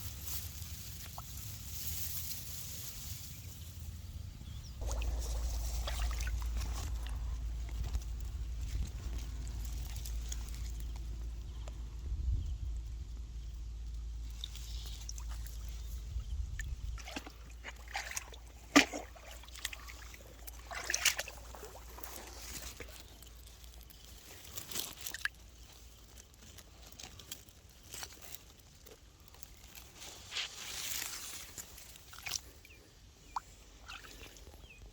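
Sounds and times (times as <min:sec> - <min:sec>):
water sloshing and splashing: 0:04.8 - 0:10.8, 0:14.3 - 0:26.3, 0:30.5 - 0:34.8.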